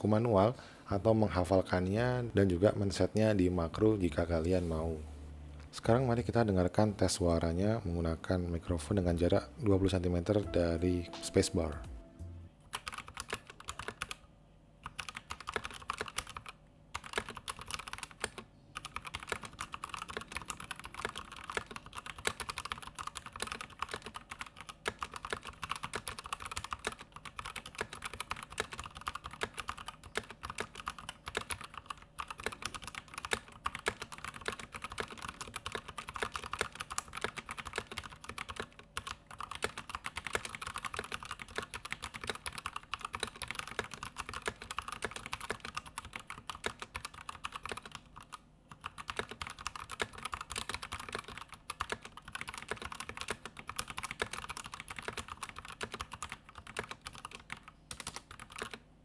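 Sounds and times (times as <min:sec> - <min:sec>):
typing on mechanical keyboard: 0:12.7 - 0:14.2, 0:14.8 - 0:58.9.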